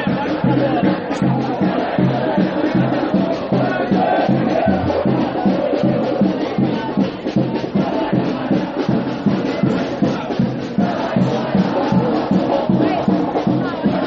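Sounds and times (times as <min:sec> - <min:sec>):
crowd singing and chanting: 0:00.0 - 0:14.0
samba drums beating fast: 0:00.0 - 0:14.0.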